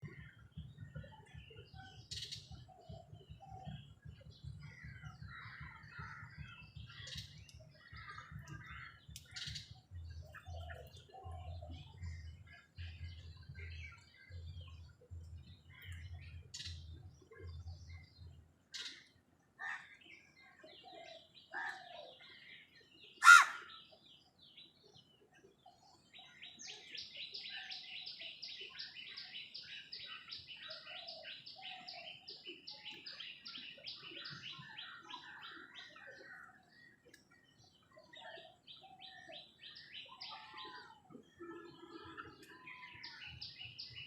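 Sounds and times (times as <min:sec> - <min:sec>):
wild birds calling: 0:23.1 - 0:24.0.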